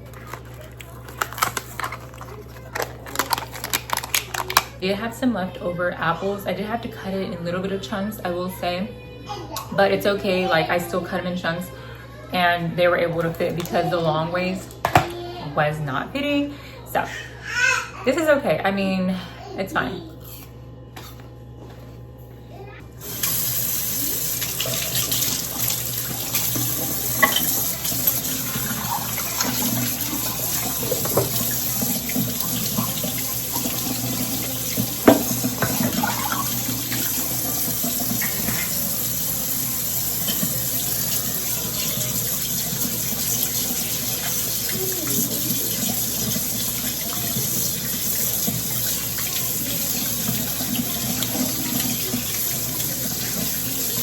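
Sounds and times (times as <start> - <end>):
tap running into sink: 24.2 - 54.0
knocks of things in sink: 35.0 - 36.3.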